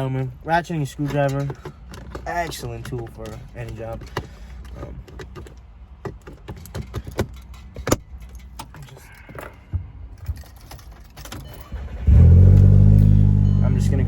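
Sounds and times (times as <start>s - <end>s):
small metallic rattles: 0.8s - 11.9s.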